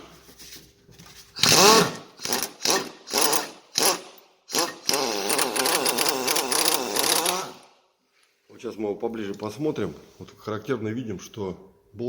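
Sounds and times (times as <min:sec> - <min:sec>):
power wrench running in bursts: 0:01.4 - 0:07.7.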